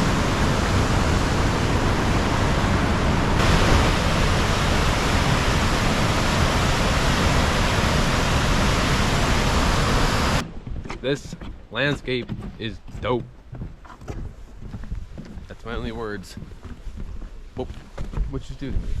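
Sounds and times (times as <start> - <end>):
waterfall rushing: 0.0 - 10.4.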